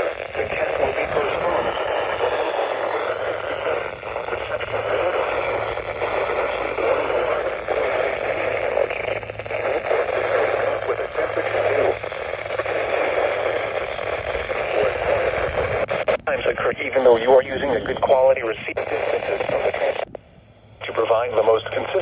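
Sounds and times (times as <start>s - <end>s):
low hum: 0.0s - 17.0s
announcer's voice on radio: 0.0s - 20.0s, 20.8s - 22.0s
radio static: 0.0s - 22.0s.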